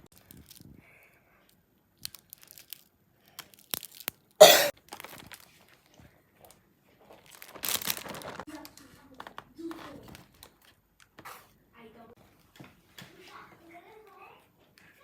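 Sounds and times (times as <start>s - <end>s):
candy wrapper crinkling: 0.2s - 0.7s, 2.0s - 5.6s, 7.1s - 9.4s.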